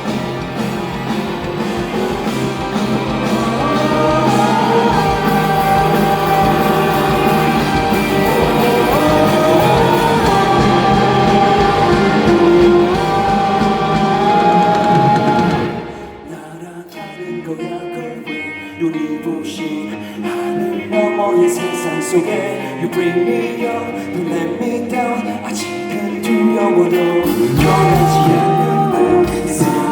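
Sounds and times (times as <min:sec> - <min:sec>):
sliding held melody notes: 0:00.0 - 0:16.4
pop-rock song: 0:00.0 - 0:29.9.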